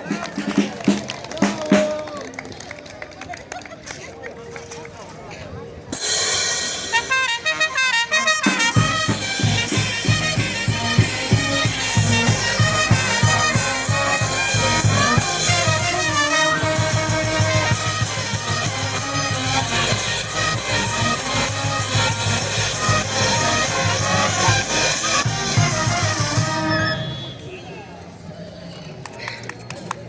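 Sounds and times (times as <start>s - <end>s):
steady drum beat: 6.0s - 26.8s
brass playing a tune: 6.0s - 27.4s.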